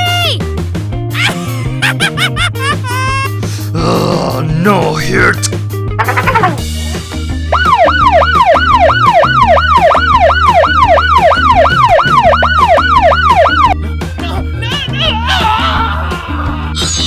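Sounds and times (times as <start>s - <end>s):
background music with bass line: 0.0s - 17.0s
emergency vehicle siren: 7.5s - 13.8s.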